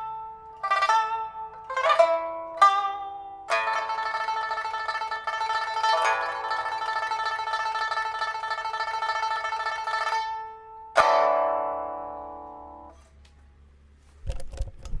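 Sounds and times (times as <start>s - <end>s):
pipa tremolo notes: 0.0s - 13.0s
struck pipa chord ringing: 0.0s - 13.2s.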